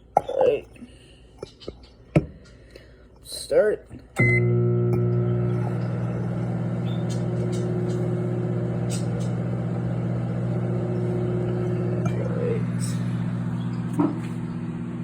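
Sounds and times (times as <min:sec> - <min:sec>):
microwave oven humming: 0:04.1 - 0:15.0.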